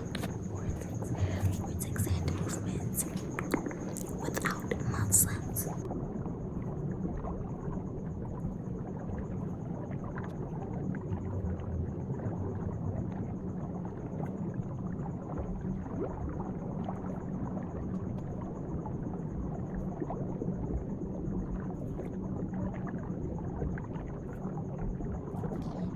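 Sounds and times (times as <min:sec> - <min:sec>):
underwater bubbling: 0:00.0 - 0:05.9
faint high-pitched whine: 0:00.0 - 0:15.9.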